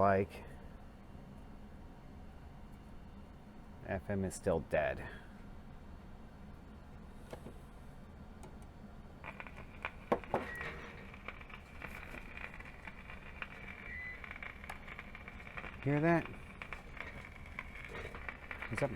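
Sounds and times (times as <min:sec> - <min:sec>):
radio speaker mains hum: 0:00.0 - 0:01.5, 0:02.3 - 0:18.9
crackles and clicks: 0:09.2 - 0:18.9.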